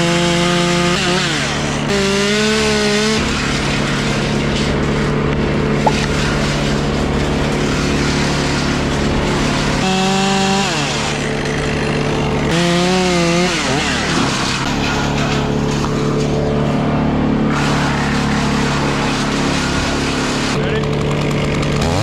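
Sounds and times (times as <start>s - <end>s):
chainsaw cutting wood: 0.0s - 22.0s.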